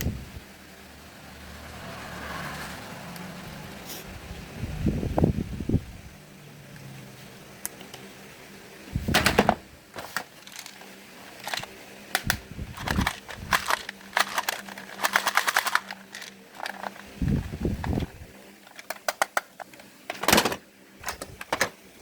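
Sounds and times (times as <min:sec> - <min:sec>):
fan parts clicking and knocking: 0:09.0 - 0:21.8.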